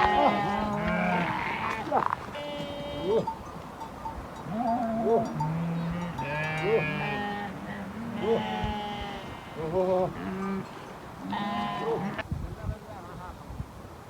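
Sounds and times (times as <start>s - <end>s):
sheep bleating: 0.0s - 3.4s, 4.5s - 12.2s.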